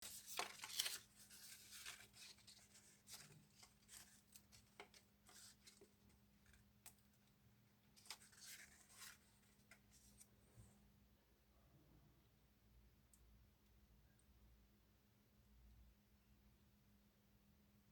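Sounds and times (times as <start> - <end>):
paper rustling: 0.0 - 6.6, 7.9 - 10.3
faint steady hum: 0.0 - 17.9.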